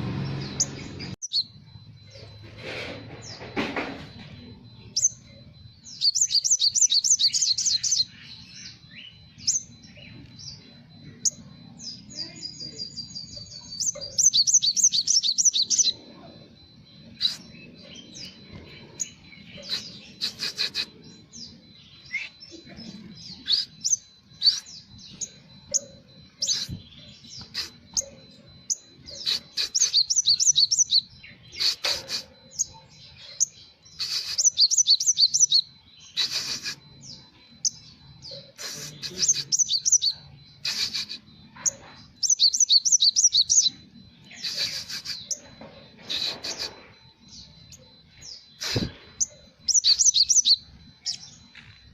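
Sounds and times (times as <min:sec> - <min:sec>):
bird chirping and trilling: 0:00.0 - 0:51.9.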